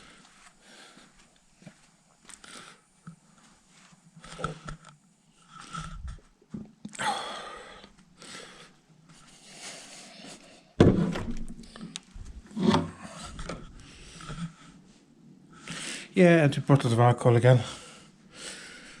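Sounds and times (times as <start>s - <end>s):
knock: 10.8s - 11.4s.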